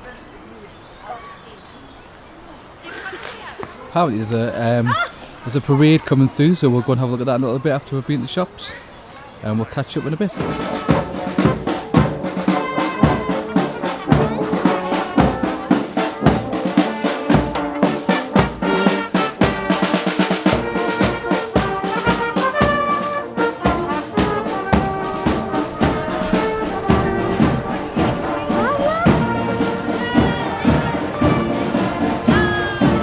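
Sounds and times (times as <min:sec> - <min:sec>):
drums: 0:09.0 - 0:33.0
trombones: 0:09.4 - 0:33.0
trumpets: 0:09.4 - 0:33.0
brass band playing: 0:09.7 - 0:33.0.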